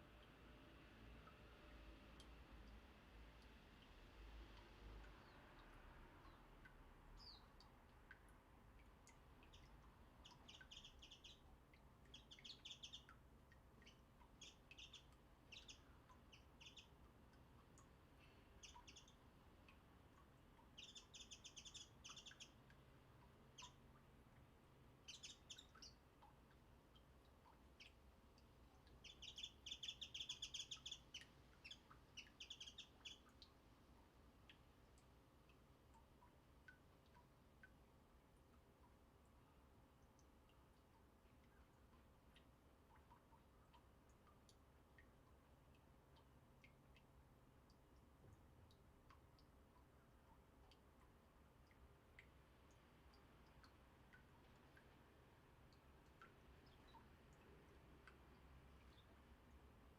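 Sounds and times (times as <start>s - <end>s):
small birds chirping: 5.0s - 8.2s, 8.8s - 24.0s, 25.0s - 37.7s, 55.7s - 59.9s.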